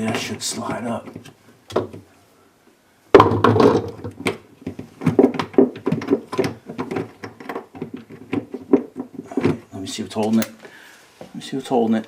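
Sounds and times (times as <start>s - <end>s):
plastic panel knocking and rattling: 3.2s - 9.6s.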